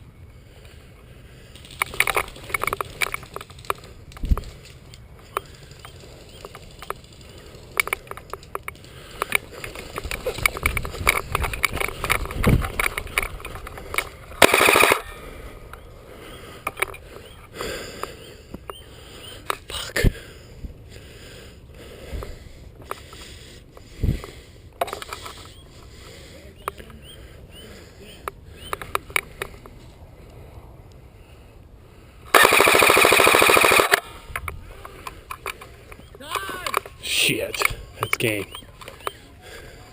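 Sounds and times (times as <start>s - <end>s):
airsoft gun rapid-fire burst: 14.4s - 15.0s, 32.3s - 34.0s
airsoft gun single shots: 14.4s - 15.1s, 32.3s - 34.1s.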